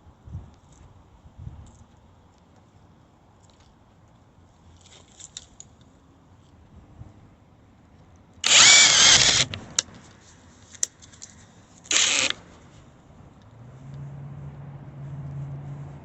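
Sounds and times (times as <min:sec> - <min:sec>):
impact driver running: 0:08.4 - 0:09.8, 0:11.9 - 0:12.4
sharp clicks: 0:08.4 - 0:09.9, 0:11.9 - 0:12.4.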